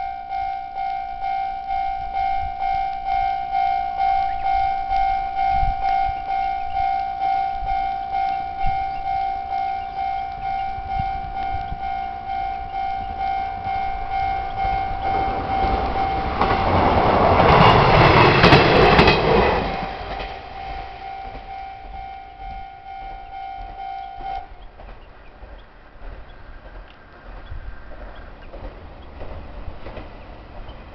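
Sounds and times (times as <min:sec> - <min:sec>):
level crossing bell ringing: 0:00.0 - 0:24.6
train passing: 0:00.0 - 0:30.9
wheels clacking over rail joints: 0:08.2 - 0:30.9.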